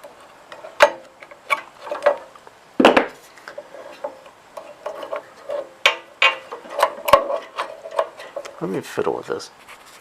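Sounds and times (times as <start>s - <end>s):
tools clicking and scraping on metal: 0.1s - 2.3s, 3.5s - 8.6s
louder knocks: 2.8s - 3.2s.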